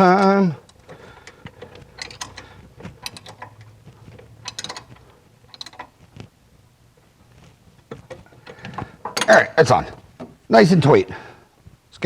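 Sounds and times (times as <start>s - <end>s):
wrench clicking on nuts: 0.0s - 6.0s.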